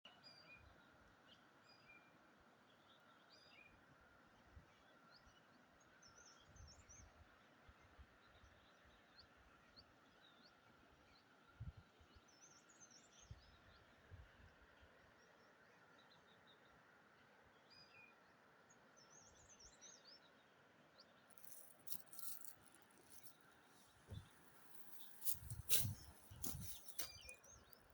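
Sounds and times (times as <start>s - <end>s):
birds chirping: 21.4s - 27.9s.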